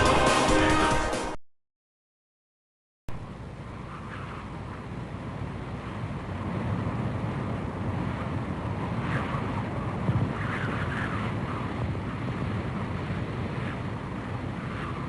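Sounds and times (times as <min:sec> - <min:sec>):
low rumbling noise: 0:03.1 - 0:15.0.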